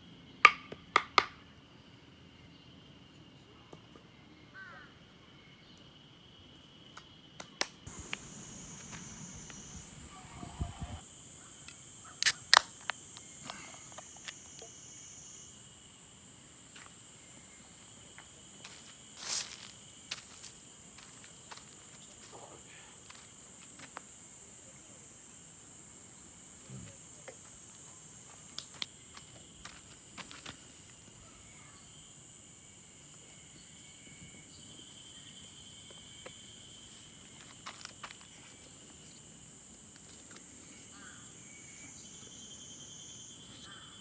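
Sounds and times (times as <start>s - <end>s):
high-pitched insect chorus: 7.9s - 44.0s.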